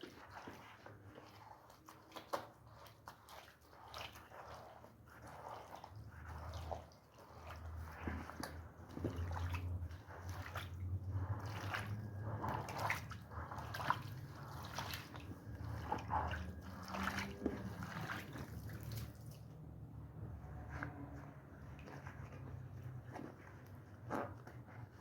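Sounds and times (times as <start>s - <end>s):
water sloshing and dripping: 0.0s - 25.0s
low steady hum: 7.5s - 24.8s.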